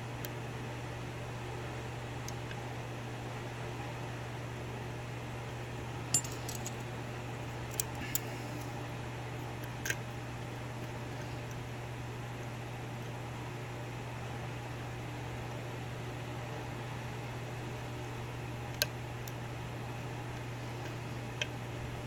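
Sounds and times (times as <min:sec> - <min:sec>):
low fan hum: 0:00.0 - 0:22.0.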